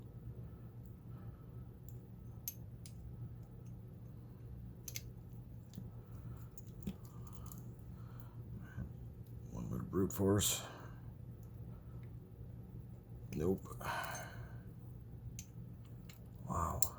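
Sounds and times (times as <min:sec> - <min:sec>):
low hum: 0:00.0 - 0:16.9
lock-picking tools clicking and scraping: 0:04.8 - 0:07.7.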